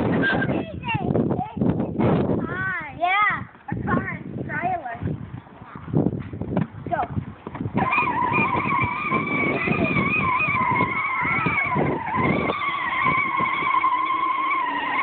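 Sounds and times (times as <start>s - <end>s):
wheels rumbling: 0.0s - 15.0s
atv engine high whine: 5.2s - 15.0s.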